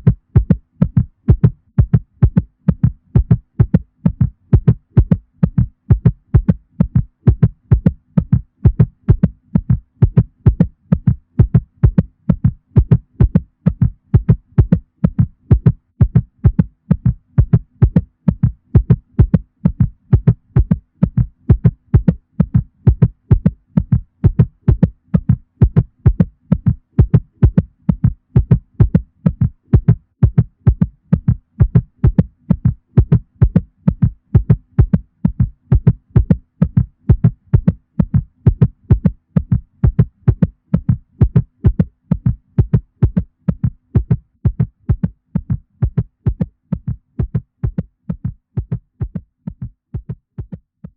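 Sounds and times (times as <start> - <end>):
cat heartbeat thuds: 0.0 - 50.9.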